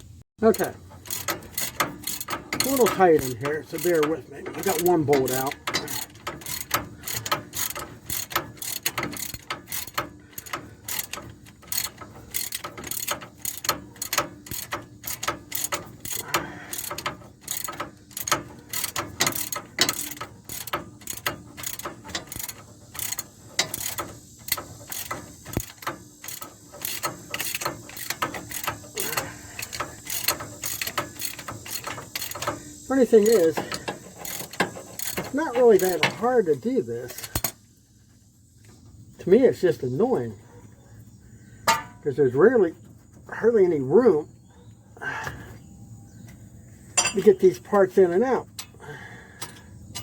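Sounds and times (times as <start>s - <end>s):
ratchet wrench clicking: 0.4s - 37.6s.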